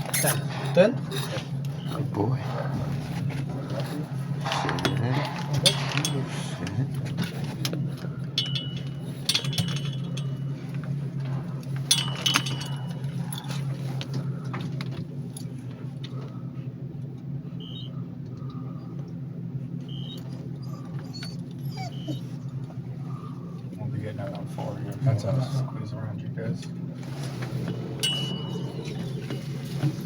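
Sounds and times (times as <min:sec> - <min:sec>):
elevator hum: 0:00.0 - 0:30.0
metal jingling: 0:04.3 - 0:13.9, 0:27.7 - 0:30.0.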